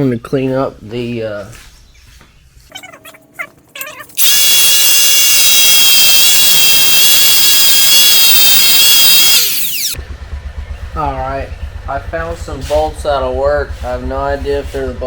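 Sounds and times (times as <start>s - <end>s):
power tool high-pitched whine: 4.2s - 10.0s.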